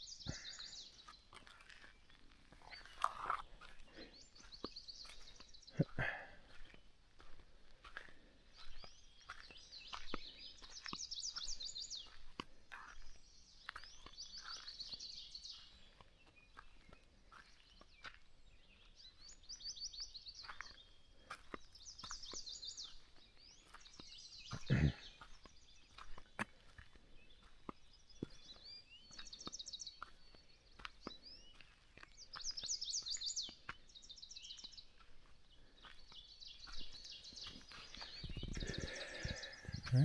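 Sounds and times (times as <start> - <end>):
songbird trilling: 2.6 - 6.0.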